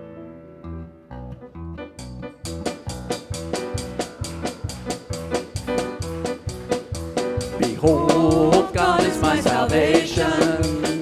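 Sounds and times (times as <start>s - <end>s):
keyboard chords: 0.0s - 11.0s
steady drum beat: 2.5s - 11.0s.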